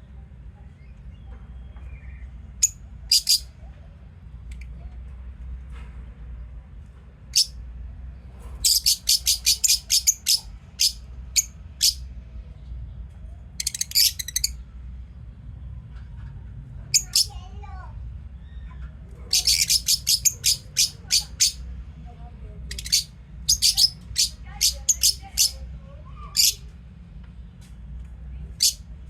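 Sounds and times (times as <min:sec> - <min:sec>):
birds chirping: 0:00.8 - 0:03.6, 0:08.6 - 0:12.0, 0:12.6 - 0:15.8, 0:16.9 - 0:17.6, 0:18.4 - 0:21.7, 0:22.7 - 0:26.7.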